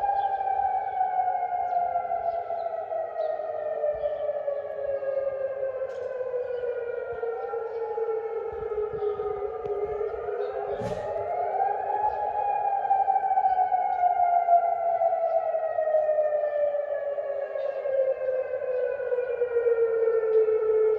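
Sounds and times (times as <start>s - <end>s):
warning sirens wailing: 0.0s - 20.9s.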